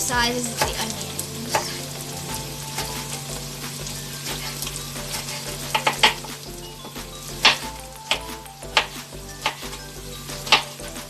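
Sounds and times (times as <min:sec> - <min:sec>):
onions sizzling in hot oil: 0:00.0 - 0:07.4.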